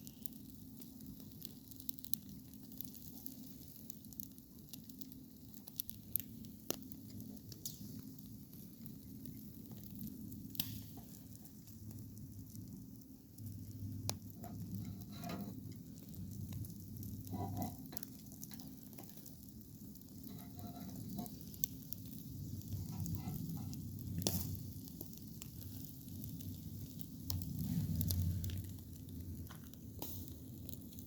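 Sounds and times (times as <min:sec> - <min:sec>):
chicken sizzling: 0:00.0 - 0:31.0
small pops and crackles: 0:00.0 - 0:31.0.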